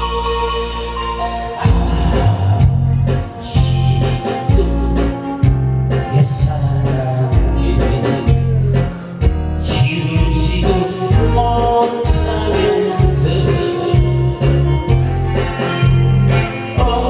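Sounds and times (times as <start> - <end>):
loud amplified music with bass beat: 0.0 - 17.0.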